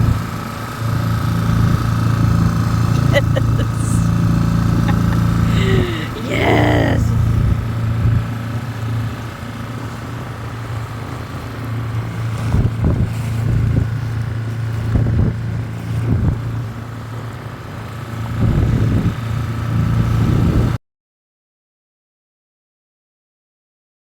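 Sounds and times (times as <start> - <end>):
outboard motor running: 0.0 - 5.6, 7.1 - 20.8.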